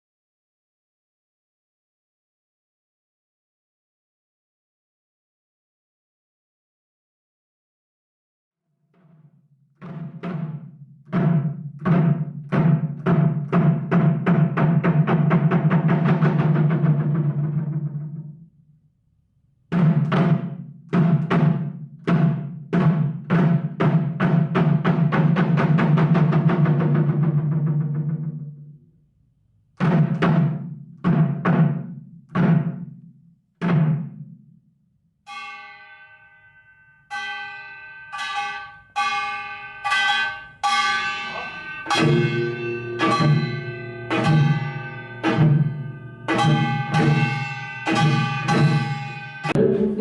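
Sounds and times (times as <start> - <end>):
low drum beats: 9.8 - 18.3, 41.1 - 50.0
bell-like metal percussion ringing: 35.3 - 50.0.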